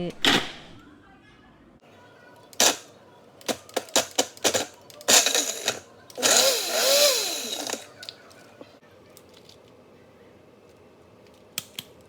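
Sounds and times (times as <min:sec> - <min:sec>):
blender motor: 0:02.6 - 0:02.8, 0:03.5 - 0:08.0.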